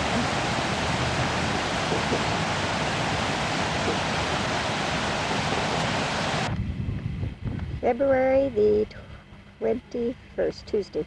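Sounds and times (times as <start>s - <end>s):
waterfall rushing: 0.0s - 6.5s.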